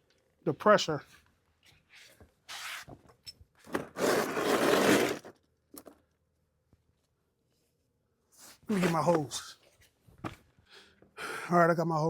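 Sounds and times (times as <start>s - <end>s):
rubbing and scraping: 3.9s - 5.3s, 8.7s - 9.3s.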